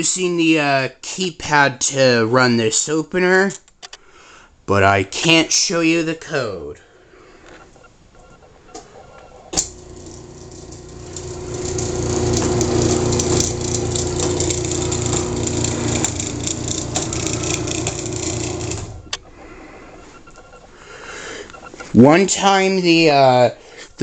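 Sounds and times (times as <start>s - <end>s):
garage door opener click: 9.5s - 19.3s
garage door motor humming and rattling: 9.5s - 19.5s.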